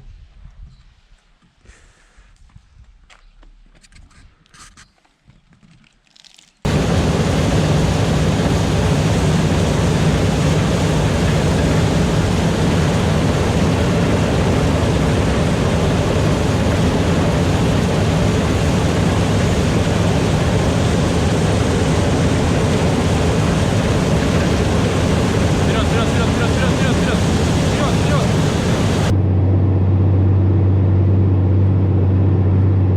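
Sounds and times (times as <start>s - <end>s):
tractor engine droning: 6.7s - 32.9s.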